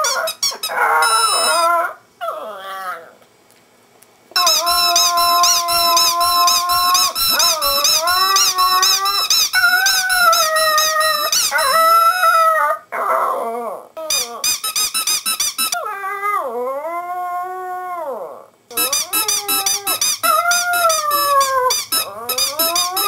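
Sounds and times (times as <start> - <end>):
dog howling: 0.0 - 3.1, 4.4 - 14.4, 15.8 - 23.0
high squeaks: 4.4 - 11.7, 18.7 - 23.0.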